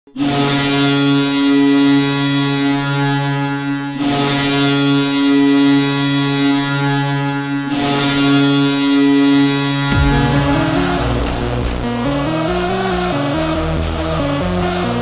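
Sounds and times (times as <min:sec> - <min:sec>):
rush of crowd noise: 0:09.9 - 0:13.2
goal horn blowing deep chord: 0:09.9 - 0:13.3.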